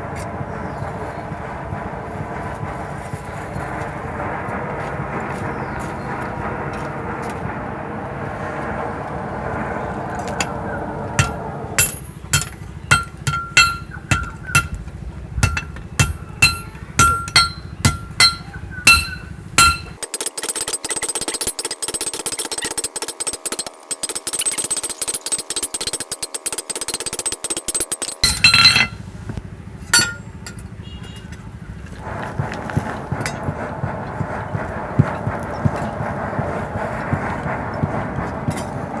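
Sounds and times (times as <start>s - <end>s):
fast metallic rattle: 10.0s - 29.2s, 29.8s - 39.0s
hammer striking steel on anvil: 11.2s - 14.8s, 15.4s - 29.0s, 29.9s - 30.7s.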